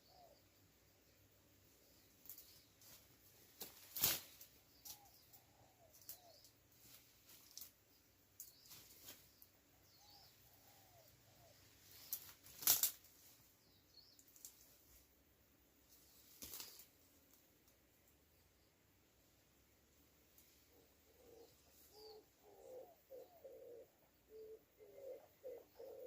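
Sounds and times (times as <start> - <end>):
small birds wings flapping: 2.2 - 5.1, 6.8 - 7.8, 8.4 - 9.4, 11.9 - 13.4, 15.9 - 17.4
faint short bird calls: 4.7 - 7.6, 8.4 - 12.4, 20.4 - 26.0.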